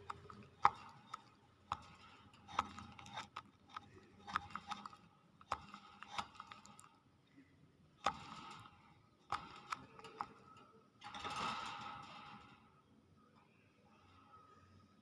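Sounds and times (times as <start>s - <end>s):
sharp clicks and taps: 0.0s - 7.0s.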